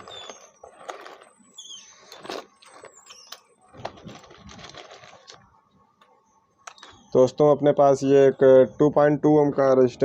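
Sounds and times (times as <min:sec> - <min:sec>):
small parts and tools clicking: 0:02.0 - 0:05.4.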